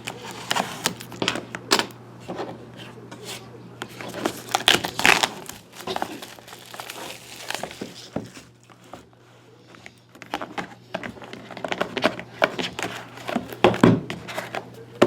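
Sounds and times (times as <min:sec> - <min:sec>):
plastic shrink wrap crinkling: 0:00.0 - 0:01.3, 0:03.9 - 0:08.8.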